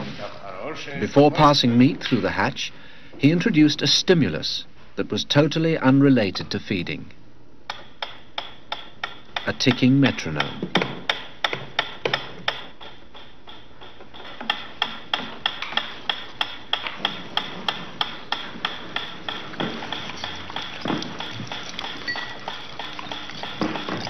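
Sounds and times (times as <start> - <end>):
metronome ticking: 18.3 - 23.9.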